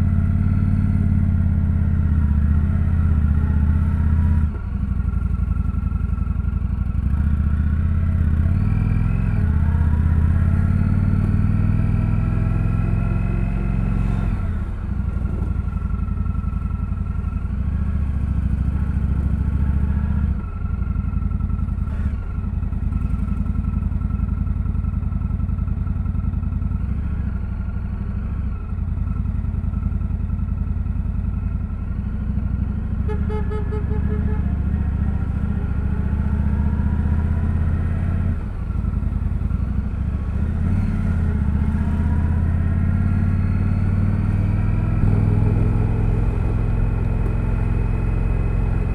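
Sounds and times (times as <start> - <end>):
motorcycle engine riding: 0.0 - 48.9.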